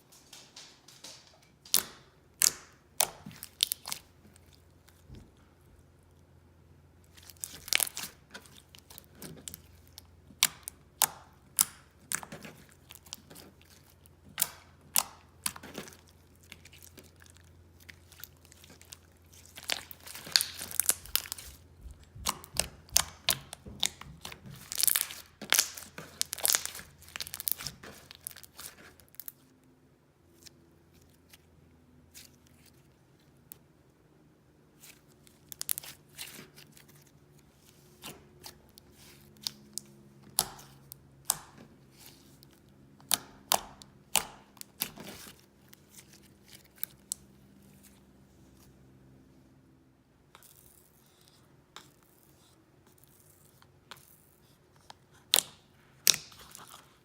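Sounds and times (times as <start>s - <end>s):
slime popping and crackling: 0.2s - 4.7s, 7.2s - 29.4s.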